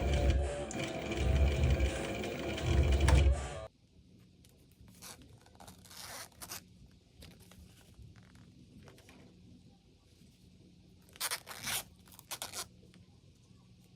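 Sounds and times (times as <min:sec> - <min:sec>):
zipper pulls: 0:05.0 - 0:06.6, 0:11.2 - 0:12.7.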